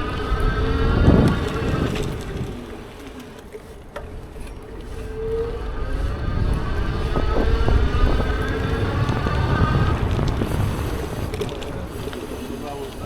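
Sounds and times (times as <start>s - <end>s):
motor whine rising in pitch: 4.7s - 11.4s
deep rumble: 5.5s - 12.3s.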